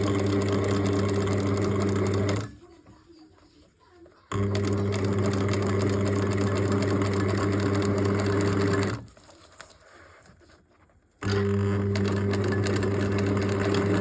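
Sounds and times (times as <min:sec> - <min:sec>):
sewing machine stitching: 0:00.0 - 0:02.9, 0:04.3 - 0:09.2, 0:11.2 - 0:14.0.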